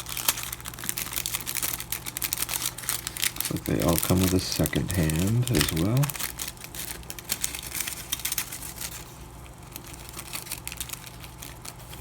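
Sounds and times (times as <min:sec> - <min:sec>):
plastic packaging crinkling: 0:00.0 - 0:12.0
steady low hum: 0:01.5 - 0:12.0
small metal parts clicking: 0:07.3 - 0:09.0.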